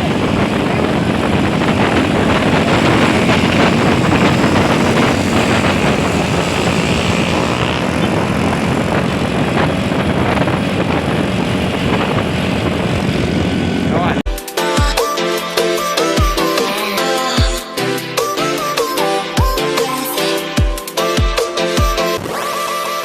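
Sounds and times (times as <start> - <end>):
bus engine and road noise: 0.0 - 14.3.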